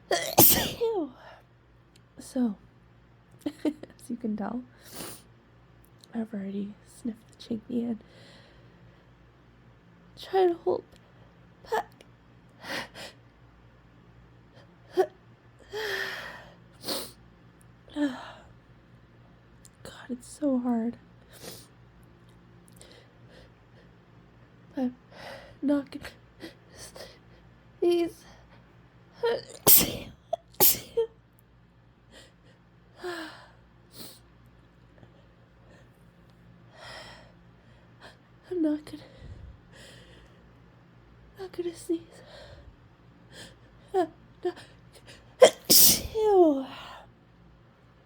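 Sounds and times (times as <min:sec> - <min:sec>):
woman gasping before a sneeze: 0:00.2 - 0:00.9, 0:29.6 - 0:31.0, 0:45.4 - 0:46.3
woman sniffing: 0:29.6 - 0:30.9, 0:45.4 - 0:46.2.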